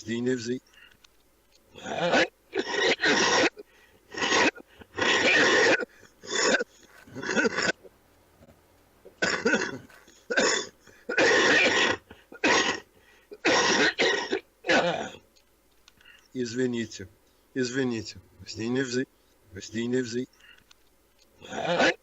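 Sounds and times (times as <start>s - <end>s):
man coughing: 1.8s - 7.8s, 9.2s - 15.2s, 21.4s - 22.0s.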